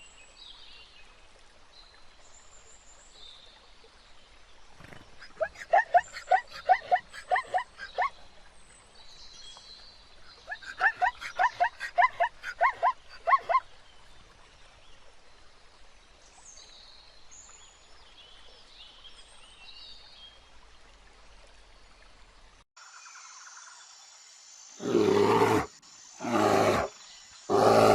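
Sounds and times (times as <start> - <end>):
animal calling rapidly: 5.2 - 8.1, 10.5 - 13.6.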